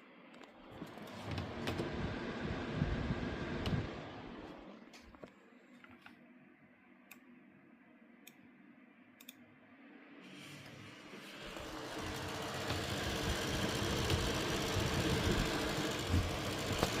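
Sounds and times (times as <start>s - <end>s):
graphics card fans grinding: 10.4s - 17.0s.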